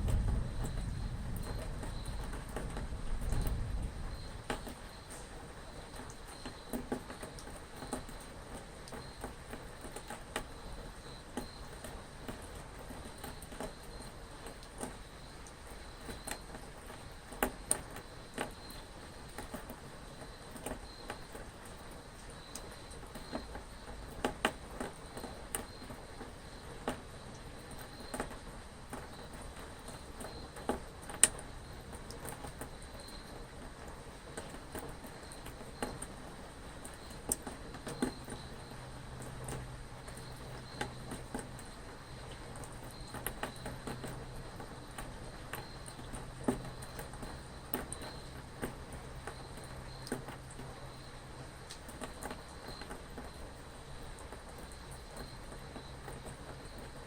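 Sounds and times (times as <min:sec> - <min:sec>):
low rumble: 0:00.0 - 0:02.2
steady rain: 0:00.0 - 0:57.0.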